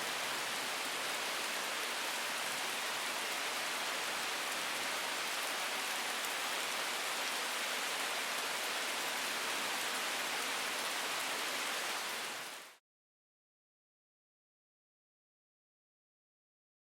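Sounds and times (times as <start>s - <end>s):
rain falling in woodland: 0.0s - 12.8s
wind: 0.0s - 12.8s.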